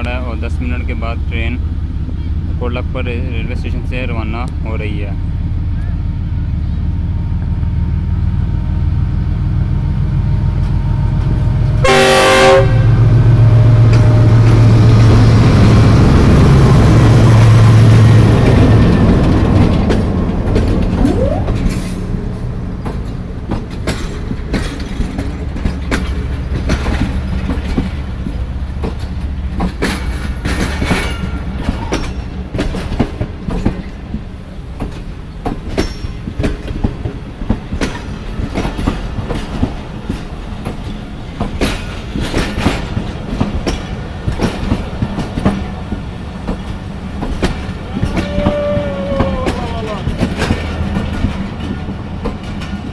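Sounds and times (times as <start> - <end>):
train low rumble: 0.0 - 52.9
train wheels clattering over rail joints: 13.6 - 21.0, 22.8 - 52.9.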